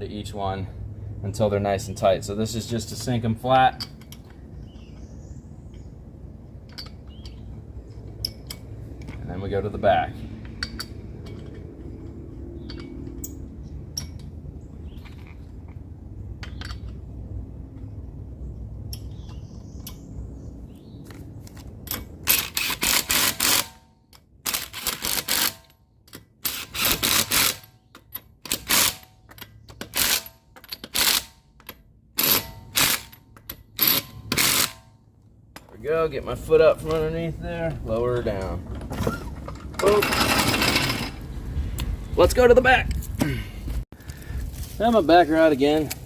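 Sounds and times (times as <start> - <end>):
low steady rumble: 0.0 - 22.9
impact wrench rattling: 38.7 - 41.3.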